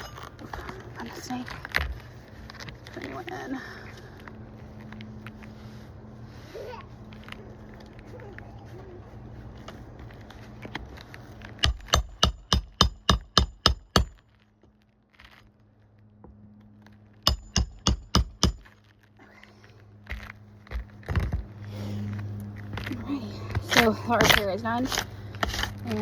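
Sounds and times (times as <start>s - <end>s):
hammer striking nails: 11.6s - 14.2s, 17.2s - 18.7s.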